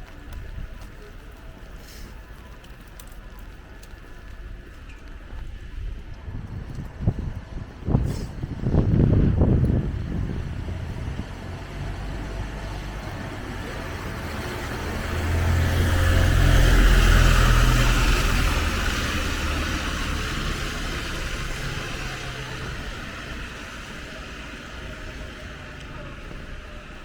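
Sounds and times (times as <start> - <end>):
vehicle engine rumble: 0.0 - 27.0
tyre hiss on wet road: 1.8 - 2.4, 8.0 - 8.4, 14.7 - 27.0.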